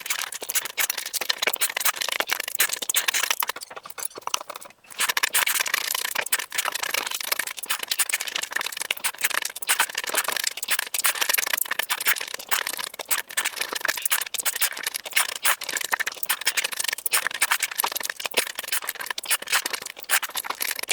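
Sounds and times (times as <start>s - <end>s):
chewing and crunching food: 0.0s - 20.9s.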